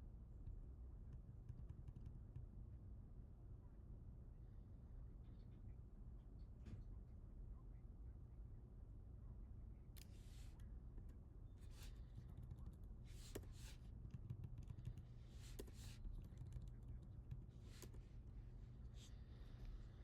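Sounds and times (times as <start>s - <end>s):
soft hissy noises: 10.0s - 10.6s
keyboard typing clicks: 12.4s - 18.0s.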